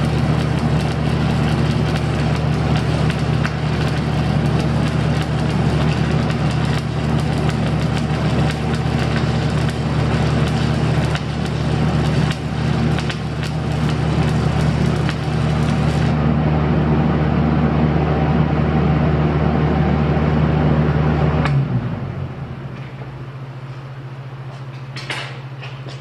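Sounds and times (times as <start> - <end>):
welding arc crackling: 0.0 - 16.2
steady low hum: 0.0 - 26.0.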